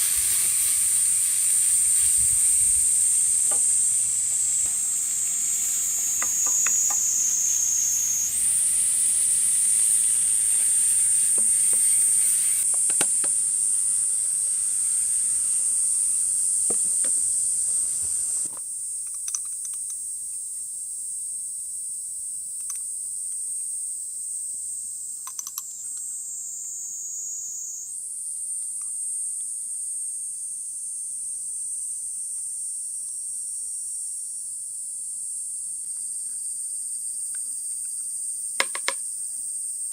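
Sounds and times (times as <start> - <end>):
food sizzling in a skillet: 0.0 - 7.9
insects chorus: 0.0 - 39.9.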